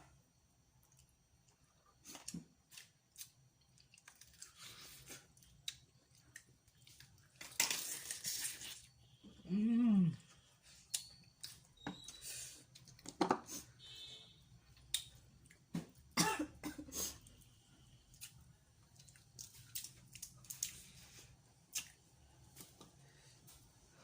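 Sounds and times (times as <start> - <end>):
chewing: 0.8 - 7.4, 18.1 - 22.0.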